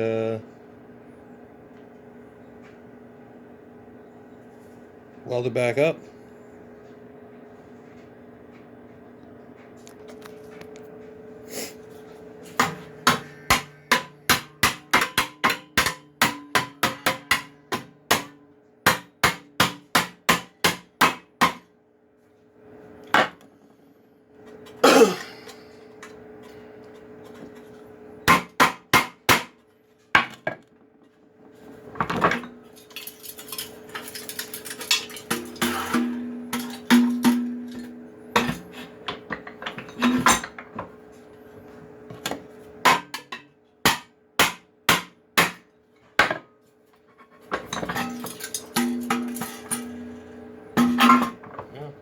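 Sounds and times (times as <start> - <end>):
hammer striking sheet steel: 12.6 - 18.3.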